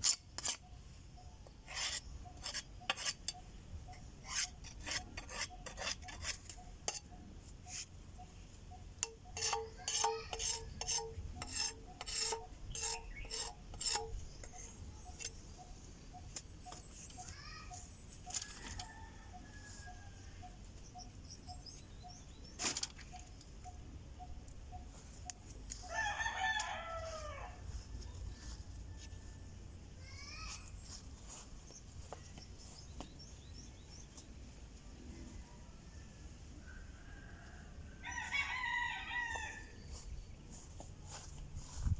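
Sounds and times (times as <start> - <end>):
soft repeating chirp: 14.2 - 18.1, 19.0 - 22.5, 23.1 - 25.9
rooster crowing: 18.4 - 20.5, 25.8 - 29.4, 36.6 - 39.8.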